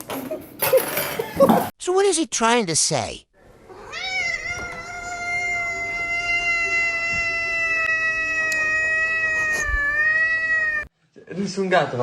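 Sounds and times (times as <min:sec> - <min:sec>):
cat yowling: 0:03.7 - 0:10.9.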